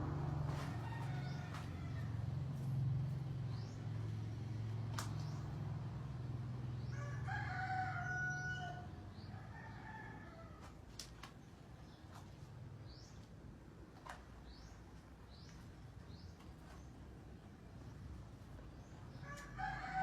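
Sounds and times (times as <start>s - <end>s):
rooster crowing: 0.5s - 2.5s, 6.9s - 10.7s, 19.2s - 20.0s.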